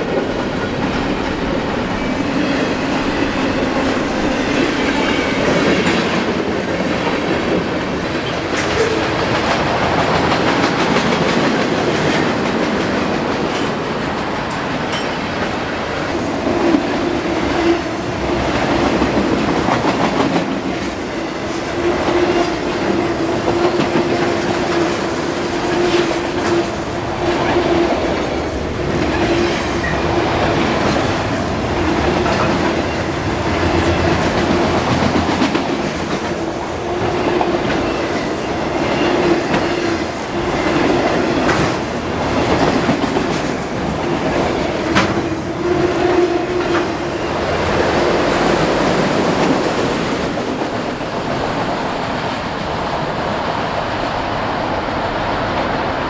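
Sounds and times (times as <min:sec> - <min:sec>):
train wheels clicking over rail joints: 0:00.0 - 0:52.3.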